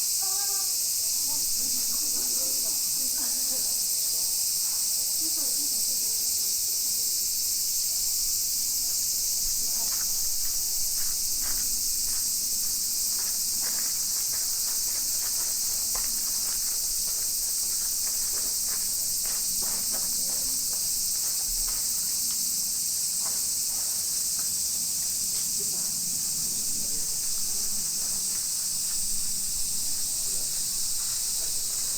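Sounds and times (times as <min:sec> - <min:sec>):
insects buzzing and trilling: 0:00.0 - 0:31.9.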